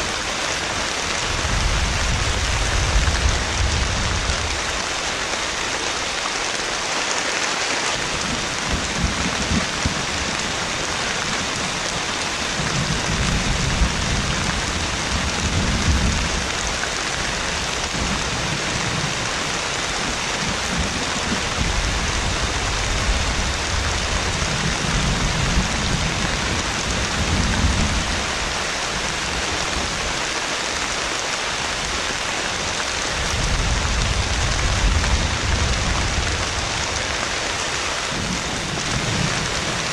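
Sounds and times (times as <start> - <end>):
heavy rain pouring: 0.0 - 39.9
low rolling thunder: 12.5 - 30.1, 33.0 - 39.9.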